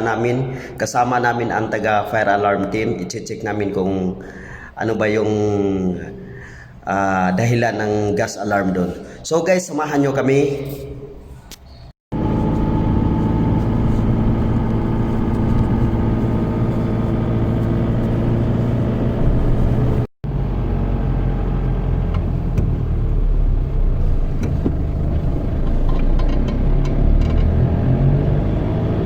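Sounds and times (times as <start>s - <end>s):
car engine running: 12.1s - 26.6s
road noise: 12.1s - 29.0s.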